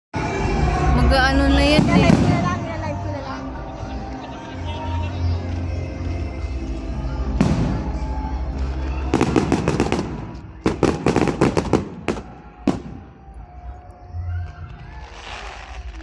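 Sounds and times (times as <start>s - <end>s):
firework bangs: 1.7s - 2.9s, 7.4s - 13.4s
crackling firework bangs: 1.8s - 2.8s, 7.4s - 8.2s, 9.1s - 13.4s.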